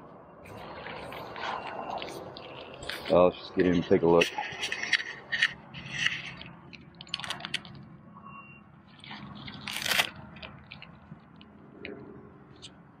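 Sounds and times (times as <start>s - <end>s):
footsteps crunching: 0.5s - 6.6s.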